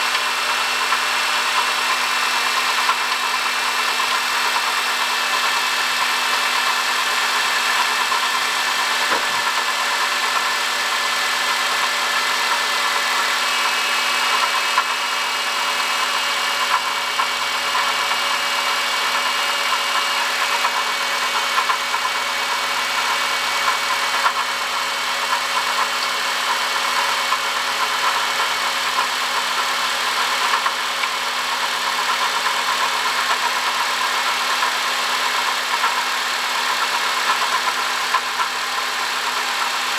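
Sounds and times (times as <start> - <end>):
water pump whine: 0.0 - 39.9
car engine idling: 21.6 - 39.9.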